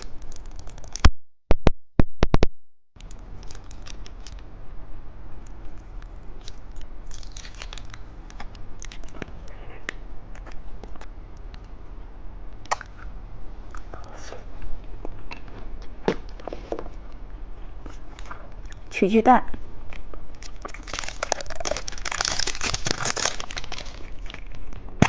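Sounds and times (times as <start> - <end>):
plastic packaging crinkling: 3.4 - 4.4, 6.4 - 8.0, 20.4 - 24.7.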